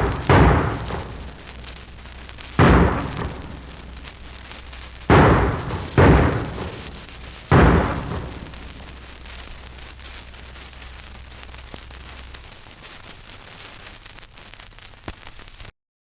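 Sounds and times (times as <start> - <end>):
loud boom: 0.0 - 10.0
low hum: 0.0 - 11.2
record surface hiss and crackle: 0.0 - 15.8.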